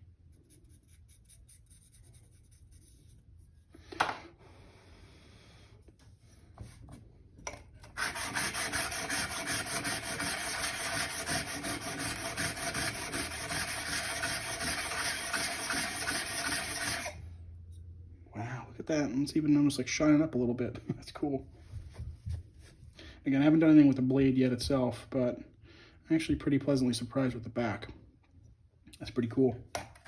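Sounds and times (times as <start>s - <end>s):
blade scraping on abrasive: 7.8s - 17.2s.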